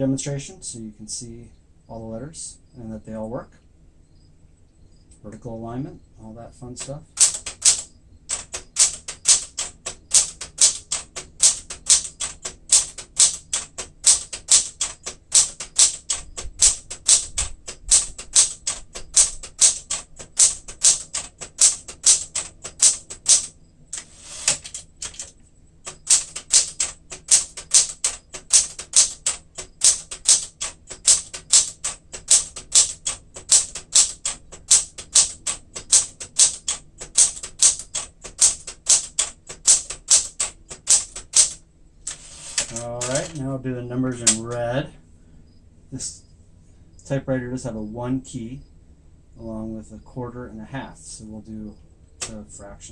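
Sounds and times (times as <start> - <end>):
manual typewriter typing: 6.7 - 43.5, 44.1 - 44.6, 52.2 - 52.5.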